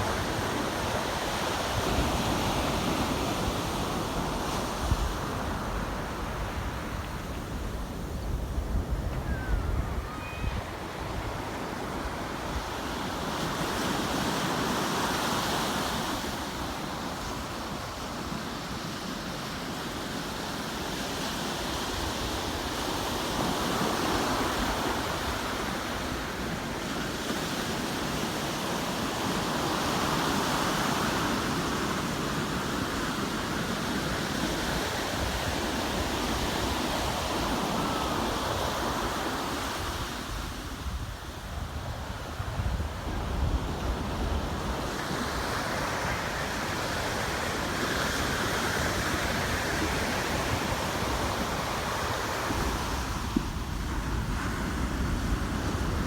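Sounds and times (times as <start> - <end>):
wind buffeting microphone: 0.0 - 13.4
ocean surf breaking on beach: 0.0 - 56.0.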